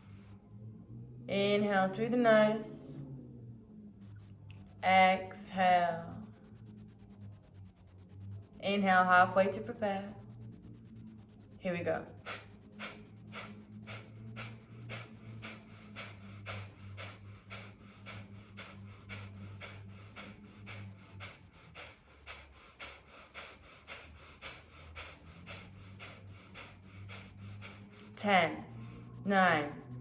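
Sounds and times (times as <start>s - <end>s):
rapid nasal exhalations: 10.7s - 30.0s.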